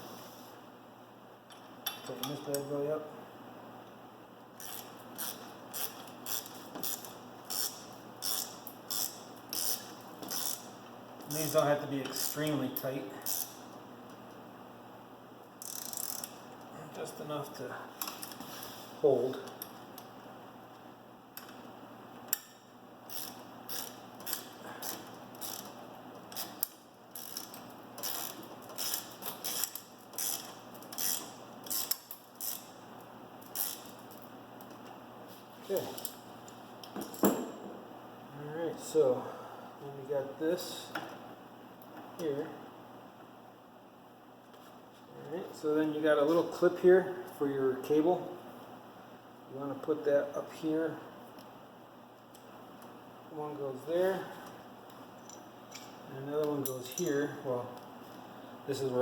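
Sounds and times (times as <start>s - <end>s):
ratchet wrench clicking: 4.6s - 10.7s, 11.3s - 12.5s, 13.2s - 13.6s, 15.6s - 16.4s, 22.3s - 32.7s, 33.4s - 34.0s.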